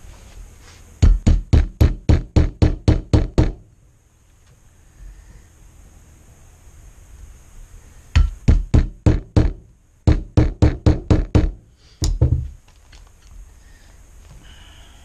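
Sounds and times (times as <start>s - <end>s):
sharp knocks on metal: 1.0s - 3.6s, 8.2s - 12.6s.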